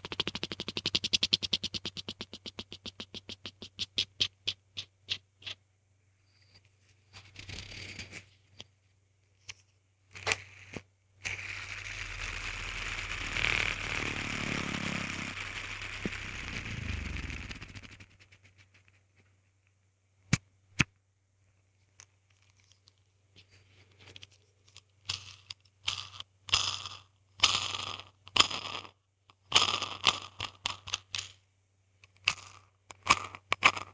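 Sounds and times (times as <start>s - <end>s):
steady rushing noise: 13.0s - 18.6s.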